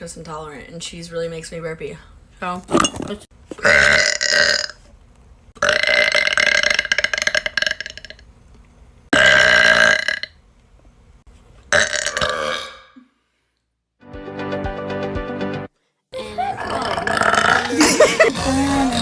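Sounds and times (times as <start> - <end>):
woman burping loudly: 3.6 - 4.8, 5.6 - 8.2, 9.2 - 10.3, 11.7 - 13.1, 16.2 - 19.0.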